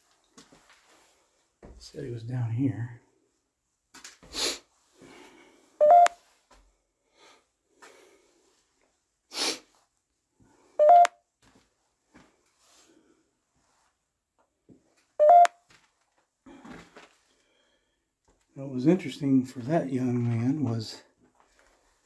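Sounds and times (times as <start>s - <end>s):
person sniffing: 4.2s - 5.2s, 9.3s - 9.8s
electronic two-tone phone beeps: 5.8s - 6.2s, 10.8s - 11.2s, 15.2s - 15.6s.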